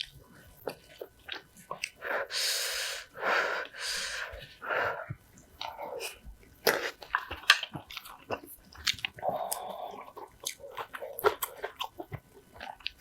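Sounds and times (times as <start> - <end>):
loud breath puffs: 2.0 - 5.1.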